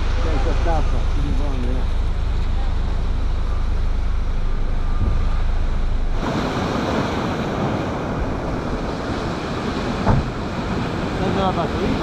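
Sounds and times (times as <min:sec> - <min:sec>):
wind buffeting microphone: 0:00.0 - 0:12.0
storm surf crashing on shore: 0:06.0 - 0:12.0.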